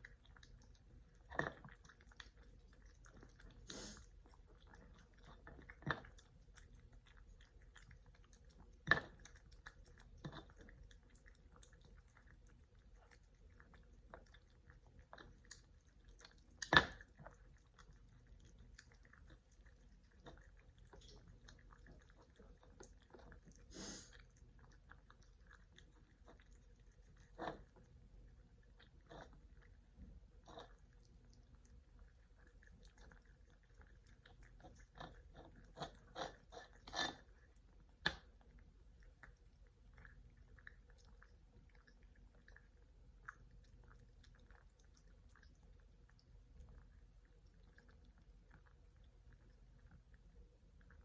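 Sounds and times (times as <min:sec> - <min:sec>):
cats chewing food: 0:00.0 - 0:51.0.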